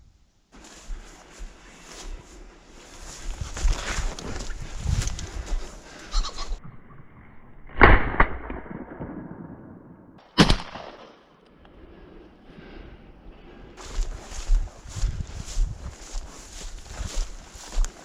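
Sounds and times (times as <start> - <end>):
shotgun shots with echo: 10.4 - 11.1.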